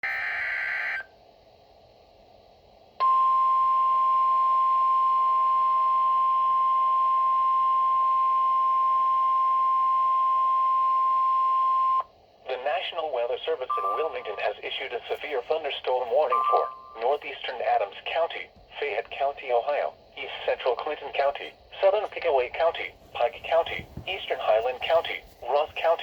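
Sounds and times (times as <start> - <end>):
steady pure alarm tone: 0.0 - 1.1, 3.0 - 12.1, 13.6 - 17.0.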